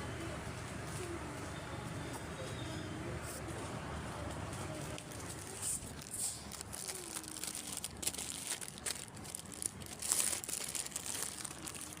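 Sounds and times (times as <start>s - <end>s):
packaging crinkling: 5.1s - 12.0s.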